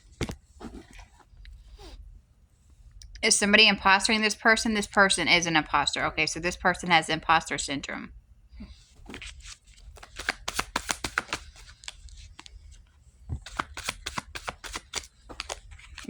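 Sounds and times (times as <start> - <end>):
cards shuffled by hand: 8.7 - 16.0.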